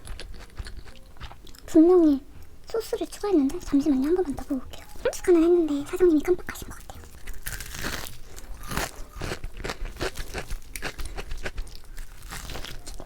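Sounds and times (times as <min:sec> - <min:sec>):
crunching fried chicken: 0:00.0 - 0:01.7, 0:06.6 - 0:13.0.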